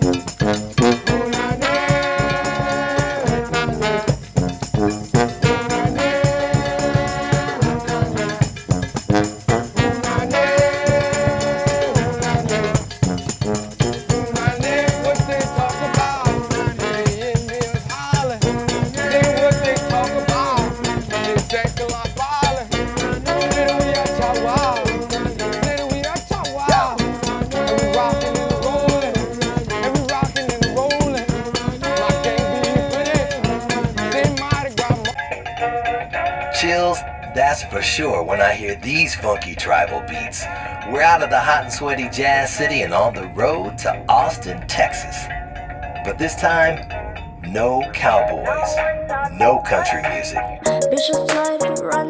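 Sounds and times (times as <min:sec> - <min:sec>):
drums: 0:00.0 - 0:35.2
shaken rattles: 0:00.0 - 0:35.2
person singing: 0:14.1 - 0:37.0, 0:48.1 - 0:52.0.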